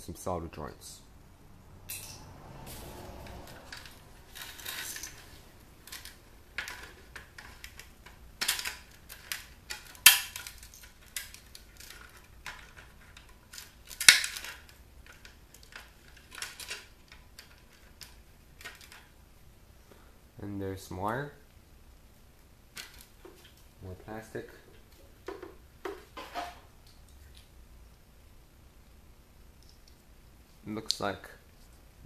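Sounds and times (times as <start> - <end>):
plastic and metal parts clattering: 3.2 - 19.2, 22.7 - 23.6.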